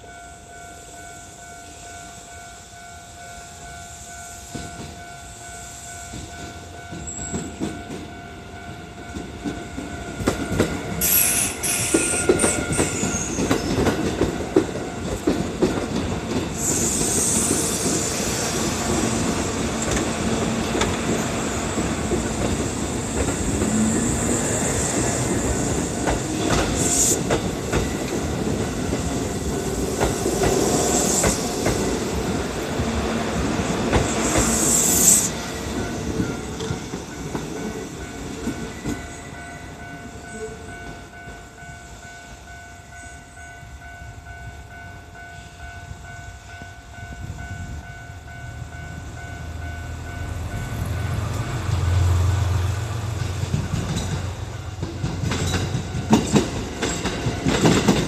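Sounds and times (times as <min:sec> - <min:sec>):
electric train passing: 0:00.0 - 0:58.0
high wheel squeals: 0:11.0 - 0:14.0, 0:16.6 - 0:19.1, 0:34.1 - 0:36.9
wheels clattering over rail joints: 0:53.2 - 0:58.0.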